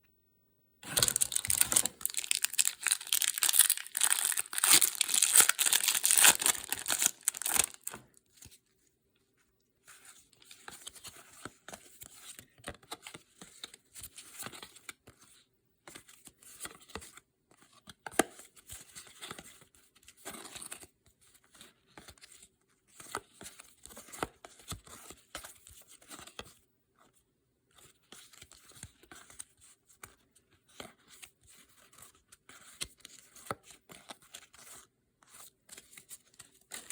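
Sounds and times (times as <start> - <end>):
wrapper crinkling: 0.8 - 8.1
cards rustling and clicking: 0.8 - 8.6, 28.2 - 36.9.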